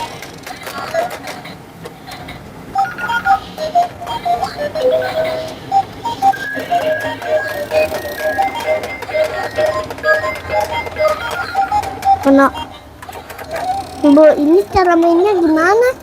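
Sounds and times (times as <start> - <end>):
electronic jingle of beeping notes: 2.8 - 12.8.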